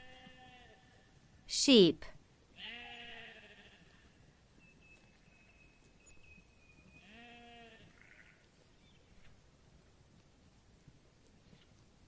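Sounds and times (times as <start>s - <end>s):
sheep bleating: 0.0s - 0.9s, 2.6s - 4.2s, 7.0s - 8.4s.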